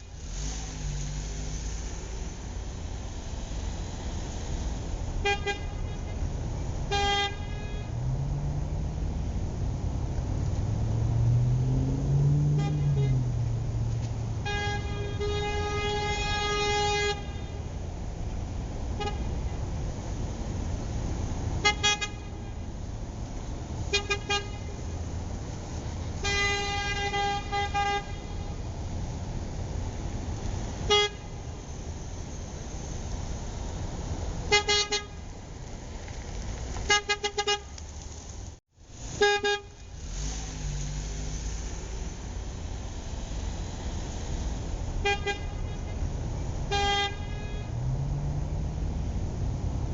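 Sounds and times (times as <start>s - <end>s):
car horn honking: 5.2s - 8.2s, 12.4s - 17.8s, 18.9s - 19.6s, 21.5s - 22.7s, 23.8s - 24.9s, 26.2s - 28.6s, 30.8s - 31.6s, 34.5s - 35.2s, 36.9s - 37.8s, 39.2s - 40.3s, 45.0s - 48.0s.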